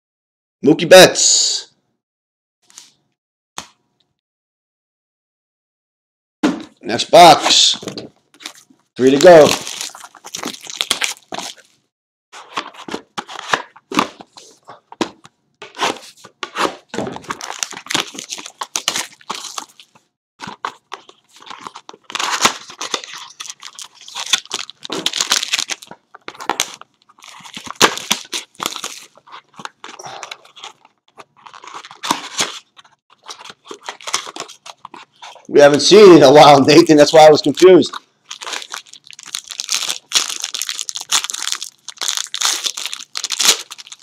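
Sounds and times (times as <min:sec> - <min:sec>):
packaging rustling: 0:07.5 - 0:11.8, 0:12.4 - 0:35.5, 0:38.3 - 0:44.0
plastic wrap tearing and crinkling: 0:07.6 - 0:11.8, 0:15.8 - 0:35.4, 0:38.3 - 0:44.0.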